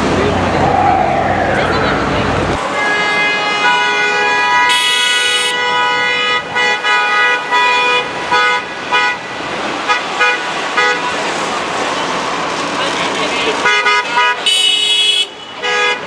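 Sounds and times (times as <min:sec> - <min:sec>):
fire truck horn blasts: 0:02.7 - 0:09.2, 0:13.7 - 0:16.0.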